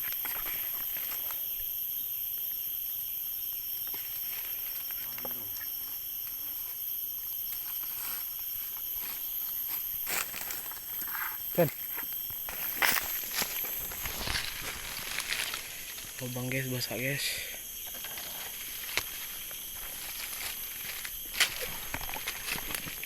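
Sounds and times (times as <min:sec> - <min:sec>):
forest insects droning: 0:00.0 - 0:23.0
rustles: 0:06.3 - 0:16.6, 0:17.8 - 0:23.0.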